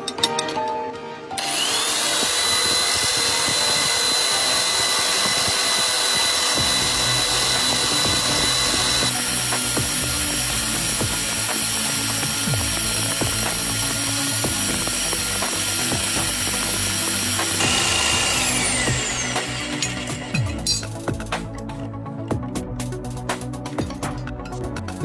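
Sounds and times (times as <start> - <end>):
rotary power tool grinding: 1.4 - 21.3.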